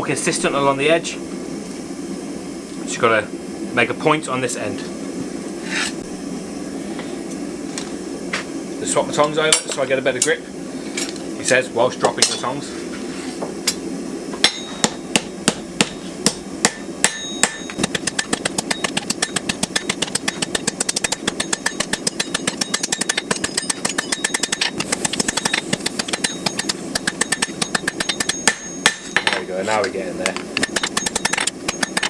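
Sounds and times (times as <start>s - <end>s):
steady low hum: 0.0s - 32.0s
hammer striking steel on anvil: 14.4s - 32.0s.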